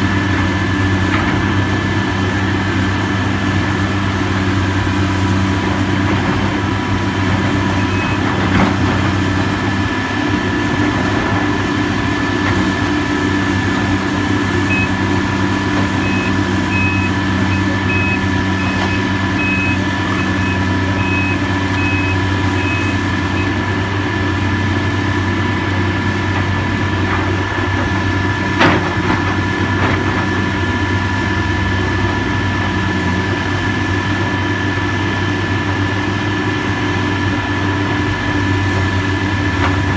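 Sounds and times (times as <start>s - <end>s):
heavy machine engine running: 0.0s - 39.9s
reversing alarm beeping: 7.5s - 8.4s, 14.6s - 23.6s.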